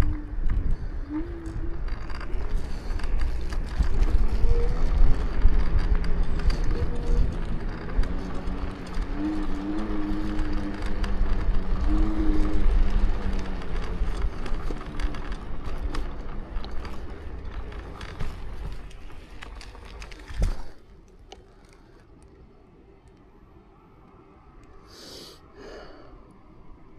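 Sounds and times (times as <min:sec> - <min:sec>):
deep rumble: 0:00.0 - 0:21.0
scooter frame crackling and creaking: 0:00.0 - 0:24.9
wavering whine: 0:00.0 - 0:26.9.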